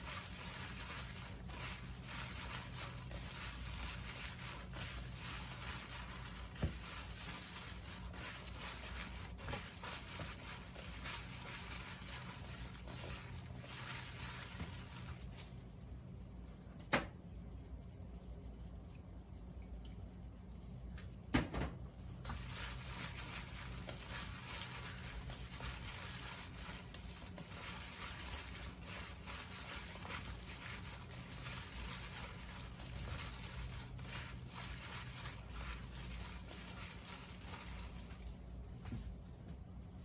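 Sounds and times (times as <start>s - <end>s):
water running from tap: 0.0s - 15.5s, 22.1s - 38.3s.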